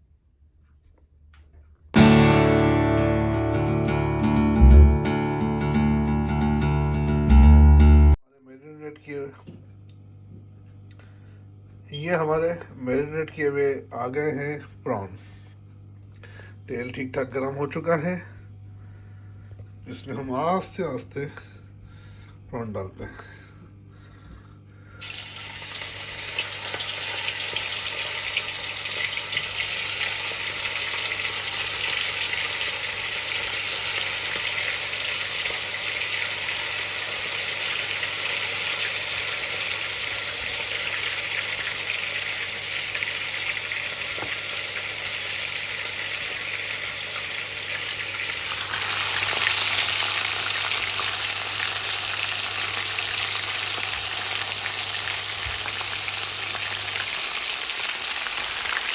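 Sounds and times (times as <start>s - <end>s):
prawns deep-frying in hot oil: 25.0s - 58.9s.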